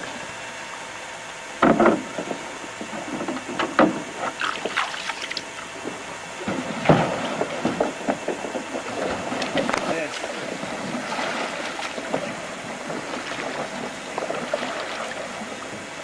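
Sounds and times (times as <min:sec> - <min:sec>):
small knocks: 0:01.6 - 0:10.3
water splashing around a canoe: 0:01.6 - 0:16.0
water trickling: 0:04.4 - 0:16.0
loud splashes: 0:09.0 - 0:16.0.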